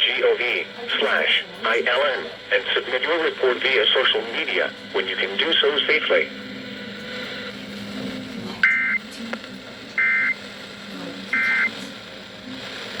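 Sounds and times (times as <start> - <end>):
radio low hum: 0.0 - 13.0
two-tone data bursts: 8.6 - 9.0, 10.0 - 10.4, 11.3 - 11.8.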